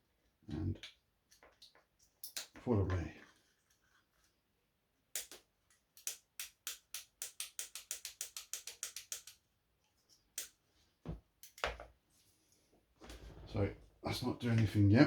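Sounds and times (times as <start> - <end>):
sharp clicks: 6.0 - 9.4.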